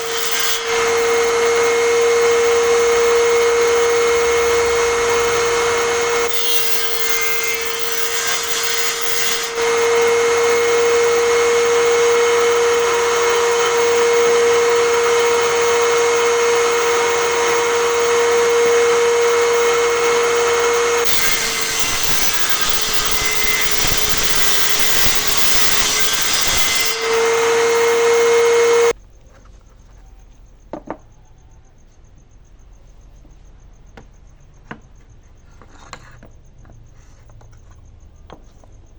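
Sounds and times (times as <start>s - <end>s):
table saw cutting wood: 0.0s - 29.0s.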